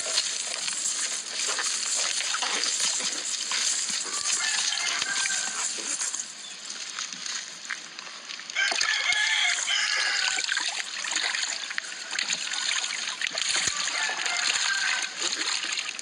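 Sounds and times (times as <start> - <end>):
steady high hiss: 0.0 - 7.1.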